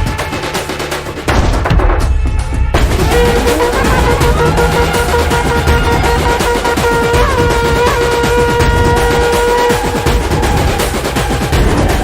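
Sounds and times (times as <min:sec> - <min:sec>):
electronic music with beat: 0:02.8 - 0:12.0
held synth tones: 0:02.9 - 0:11.0.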